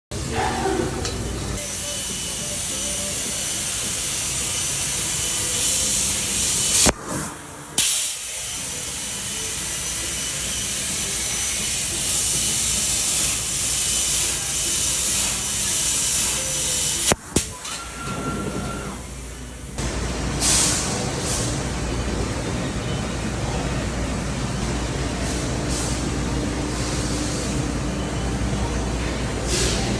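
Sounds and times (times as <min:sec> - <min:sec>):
plasma cutting torch hissing: 0:01.6 - 0:19.7.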